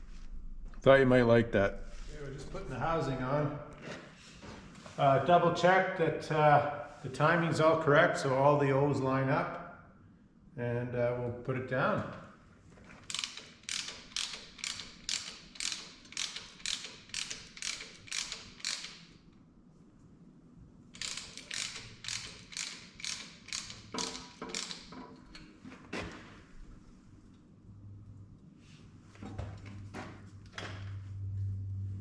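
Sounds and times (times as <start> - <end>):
ratchet clicking: 13.0 - 19.2, 21.0 - 25.4.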